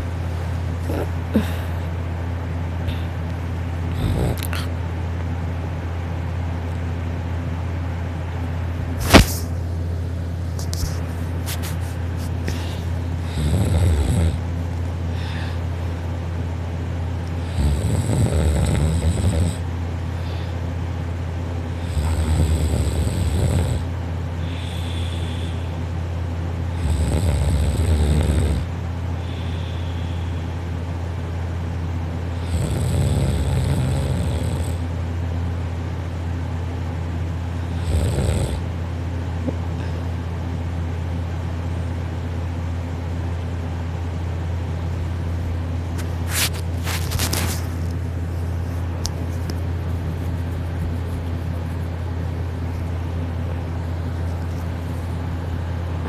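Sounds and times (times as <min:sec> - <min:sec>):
steady low hum: 0:00.0 - 0:56.0
person snoring softly: 0:03.9 - 0:04.7, 0:12.5 - 0:14.4, 0:17.4 - 0:19.6, 0:21.8 - 0:25.7, 0:26.7 - 0:30.4, 0:32.4 - 0:34.8, 0:37.7 - 0:38.6.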